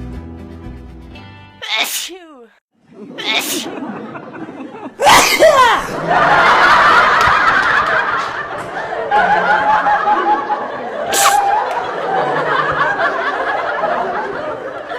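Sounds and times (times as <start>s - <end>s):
people giggling and laughing: 2.9s - 5.0s, 5.8s - 14.9s.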